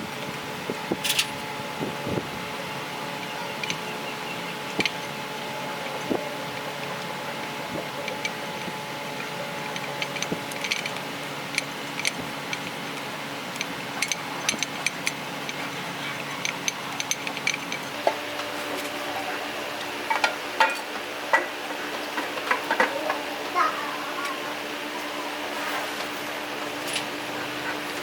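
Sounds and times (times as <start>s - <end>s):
steady background hum: 0.0s - 28.0s
hand tools clinking on metal: 1.0s - 1.4s, 8.0s - 18.2s, 20.1s - 21.5s, 26.7s - 28.0s.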